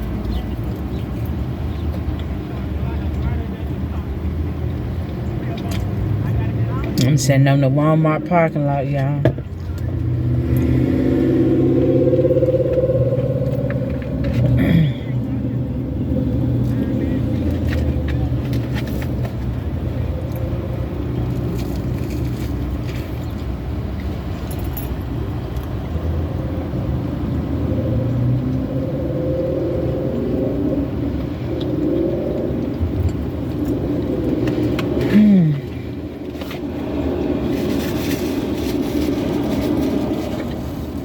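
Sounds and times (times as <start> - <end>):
car engine idling: 0.0 - 25.8
short falling tone: 10.9 - 14.6.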